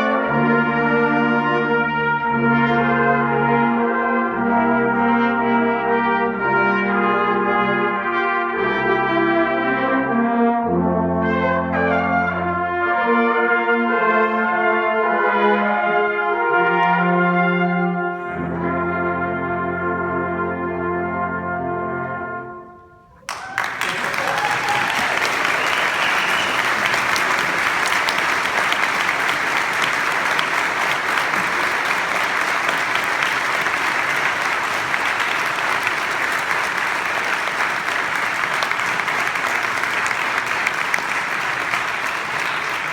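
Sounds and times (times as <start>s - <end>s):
brass ensemble chord: 0.0s - 23.0s, 25.0s - 42.9s
audience applause: 23.2s - 42.9s.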